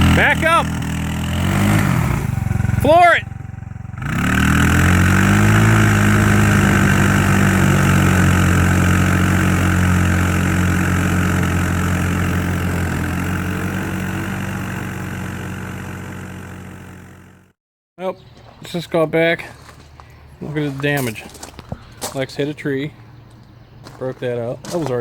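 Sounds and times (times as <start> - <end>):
small engine revving: 0.0 - 17.6.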